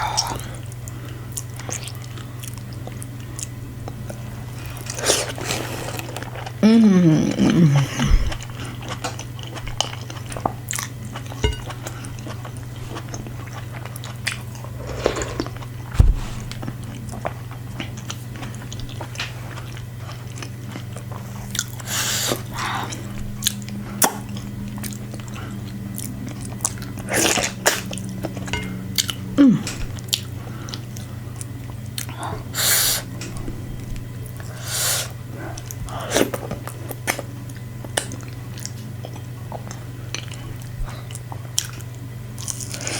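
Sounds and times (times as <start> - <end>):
steady low hum: 0.0 - 42.9
chewing and biting food: 8.3 - 15.9, 16.5 - 29.3, 29.9 - 32.5, 35.5 - 42.9.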